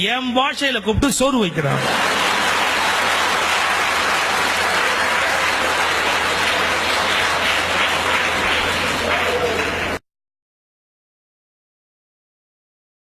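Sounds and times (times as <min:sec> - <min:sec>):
audience applauding: 0:01.7 - 0:10.0.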